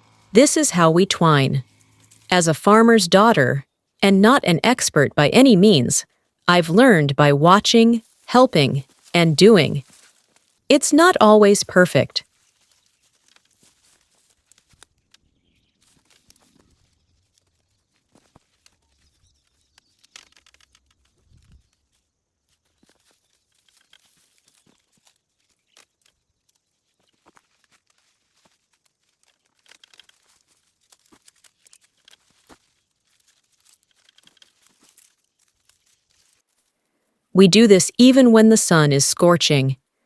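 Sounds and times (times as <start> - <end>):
plants rustling and crinkling: 8.0 - 9.2, 9.8 - 10.7, 12.2 - 36.8.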